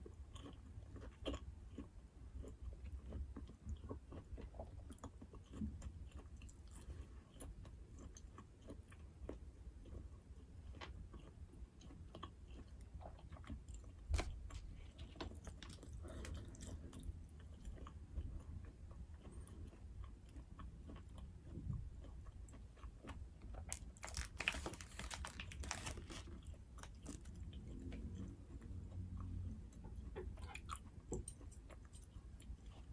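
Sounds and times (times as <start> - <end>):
person chewing food: 0.0 - 32.9.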